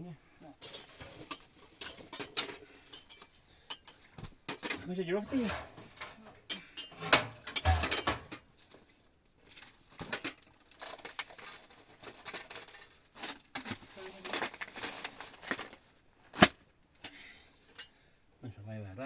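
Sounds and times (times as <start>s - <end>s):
objects clinking and knocking: 0.6s - 8.5s, 9.5s - 15.8s.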